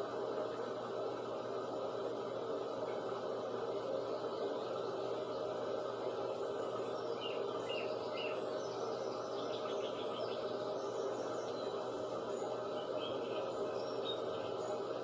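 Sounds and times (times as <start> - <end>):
small birds chirping: 6.3 - 15.0.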